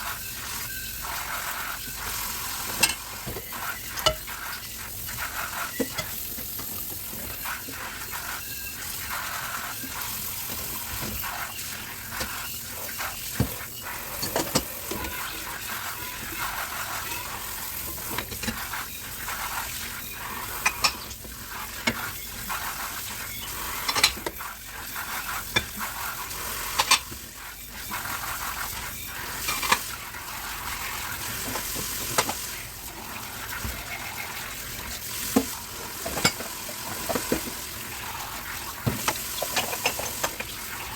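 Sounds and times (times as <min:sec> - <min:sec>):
dishes being scrubbed: 0:00.0 - 0:40.9
water running in sink: 0:00.0 - 0:40.9
dishes and cutlery clinking: 0:02.6 - 0:04.7, 0:05.3 - 0:17.4, 0:18.0 - 0:21.2, 0:23.3 - 0:24.4, 0:26.7 - 0:27.2, 0:28.8 - 0:29.9, 0:35.3 - 0:37.6, 0:38.9 - 0:40.5.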